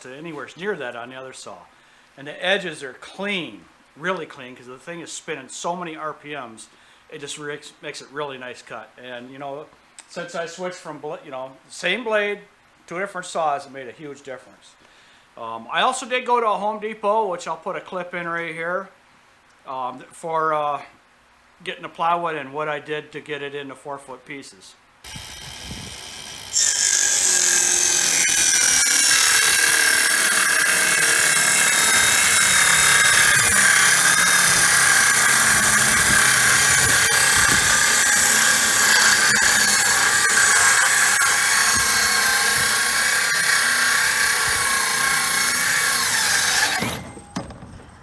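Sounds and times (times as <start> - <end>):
circular saw cutting plywood: 25.1 - 48.0.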